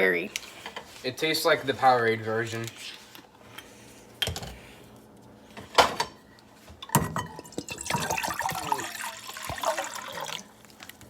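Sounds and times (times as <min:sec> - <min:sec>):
pot and bottle knocking: 0:06.9 - 0:08.8
drink splashing into pot: 0:07.3 - 0:10.5.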